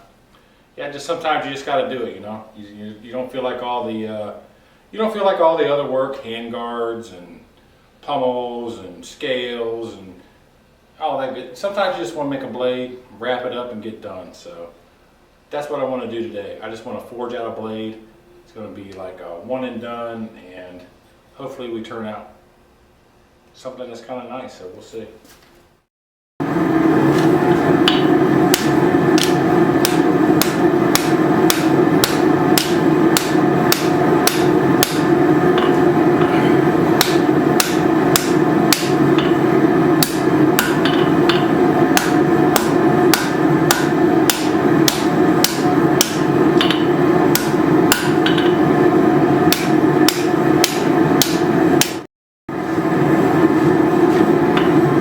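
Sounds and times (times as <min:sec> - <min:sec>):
continuous drone: 0:26.4 - 0:51.9
hammer blows on steel: 0:27.2 - 0:48.9, 0:49.5 - 0:52.0.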